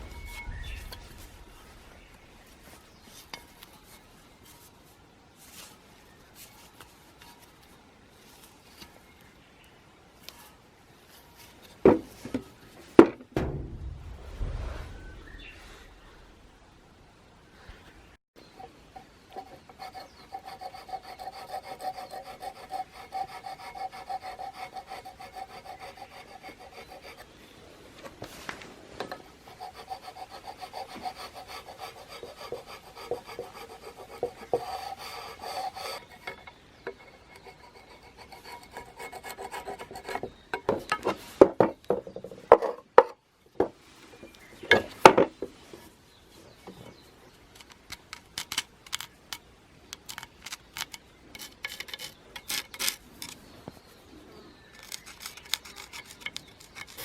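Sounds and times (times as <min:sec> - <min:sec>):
fast scraping strokes: 0:00.0 - 0:04.7, 0:29.3 - 0:40.3
loud knocks and clatters: 0:11.9 - 0:16.6.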